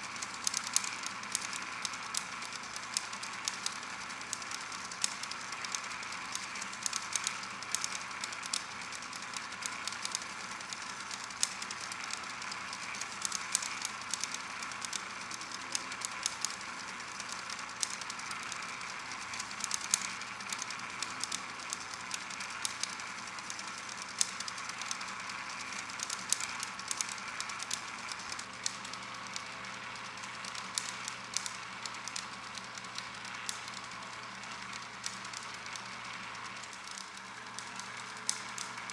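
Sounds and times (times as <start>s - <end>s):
mechanical whir: 0.0s - 38.9s
sharp mechanical clicks: 0.1s - 38.9s.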